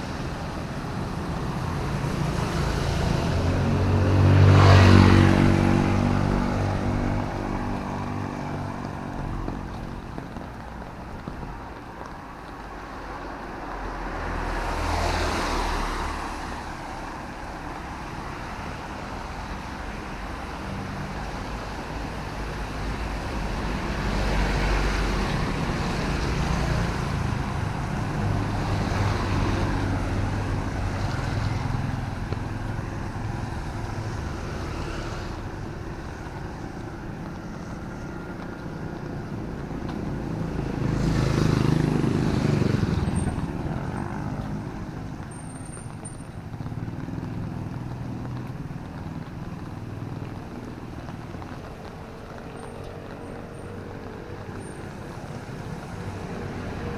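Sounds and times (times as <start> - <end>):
tyres hissing on wet road: 0.0 - 56.9.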